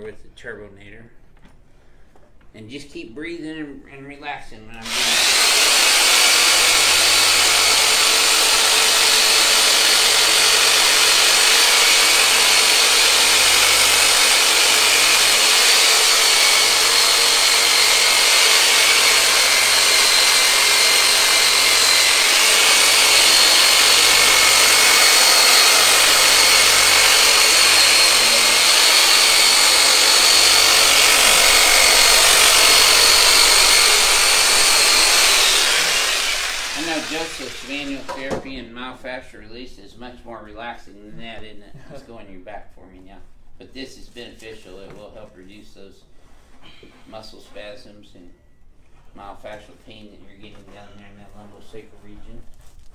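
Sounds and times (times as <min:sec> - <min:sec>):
electric massage tool whine: 0:04.8 - 0:38.3.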